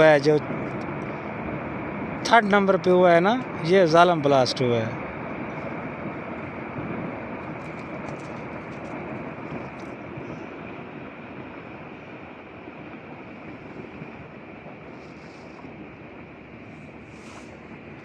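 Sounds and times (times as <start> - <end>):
deep steady rumble: 0.0 - 18.0.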